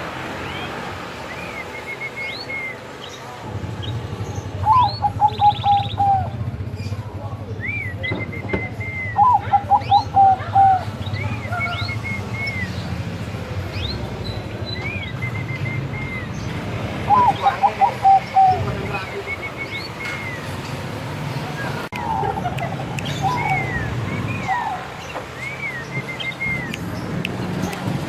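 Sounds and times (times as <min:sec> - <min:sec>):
small birds chirping: 0:00.0 - 0:28.0
dove cooing: 0:17.1 - 0:18.8.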